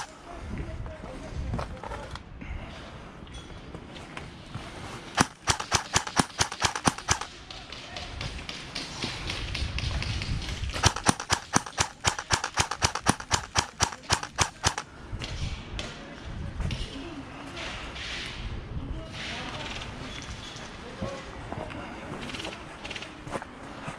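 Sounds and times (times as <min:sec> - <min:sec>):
airsoft gun rapid fire: 0:05.2 - 0:07.4, 0:10.7 - 0:14.9.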